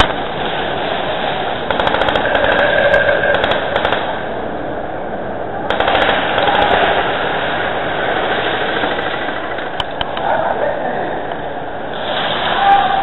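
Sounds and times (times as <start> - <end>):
steady background noise: 0.0 - 13.0
airsoft guns firing in bursts: 1.7 - 4.2, 5.7 - 7.2.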